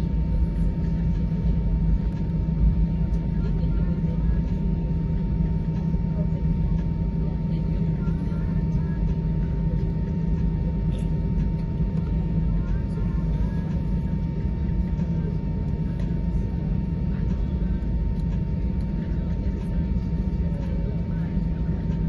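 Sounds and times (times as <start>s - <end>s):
airplane cabin rumble: 0.0s - 22.0s.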